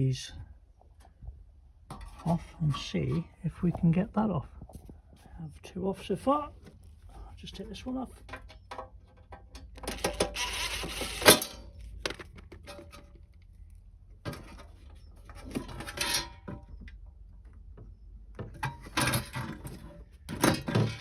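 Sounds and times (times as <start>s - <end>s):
tools and screws clinking and rattling: 7.4s - 13.2s, 14.2s - 17.0s, 18.4s - 21.0s.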